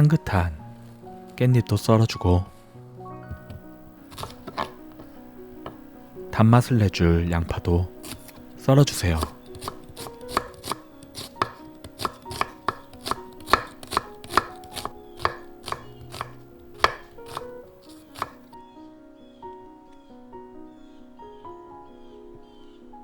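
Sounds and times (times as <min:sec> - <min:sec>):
knife slicing onion on board: 0:03.3 - 0:05.8, 0:07.9 - 0:18.5.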